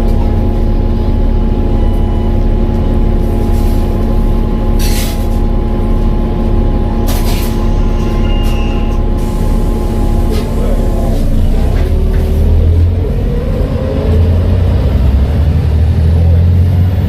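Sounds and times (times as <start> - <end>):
bus engine drone: 0.0 - 17.0.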